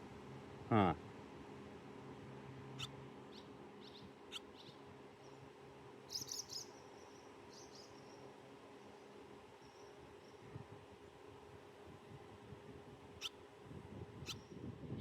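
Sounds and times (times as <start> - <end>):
swallows chirping: 6.1 - 8.2.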